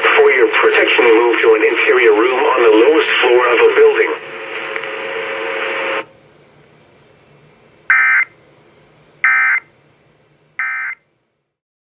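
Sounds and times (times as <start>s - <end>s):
faint radio hiss: 0.0s - 10.3s
screeching two-tone data bursts: 10.6s - 11.0s.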